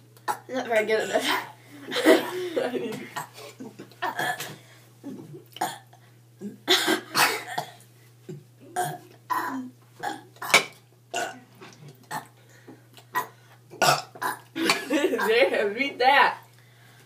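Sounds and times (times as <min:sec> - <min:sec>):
girls burping: 0:13.2 - 0:15.4.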